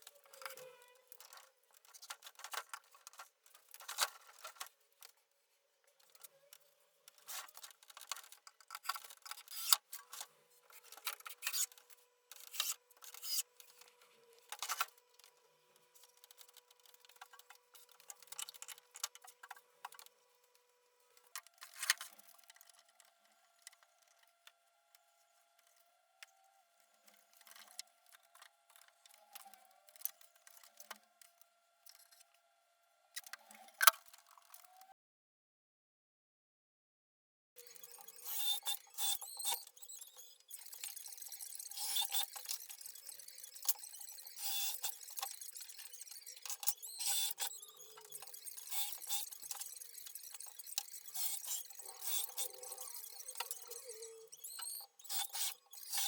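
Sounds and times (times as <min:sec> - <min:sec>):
faint steady tones: 0:37.6 - 0:56.0.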